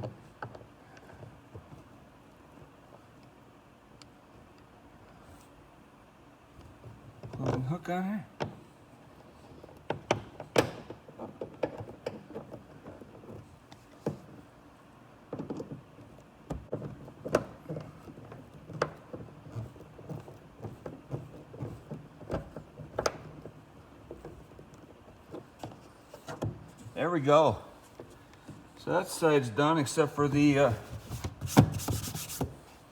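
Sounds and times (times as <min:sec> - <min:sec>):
rubbing on plastic trim: 0:30.4 - 0:32.8.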